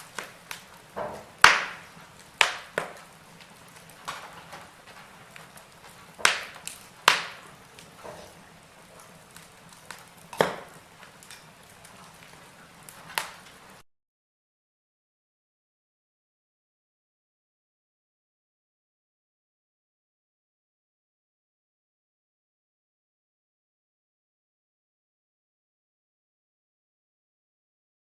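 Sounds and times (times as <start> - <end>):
campfire wood crackling: 0.0 - 13.8
faint steady hiss: 0.0 - 13.8.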